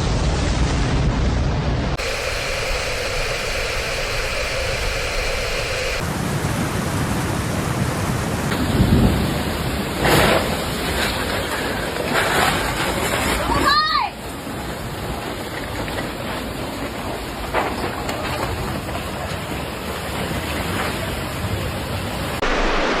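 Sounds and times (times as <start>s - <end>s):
thunder rumbling: 0.0s - 12.8s, 22.4s - 23.0s
heavy rain: 0.0s - 23.0s.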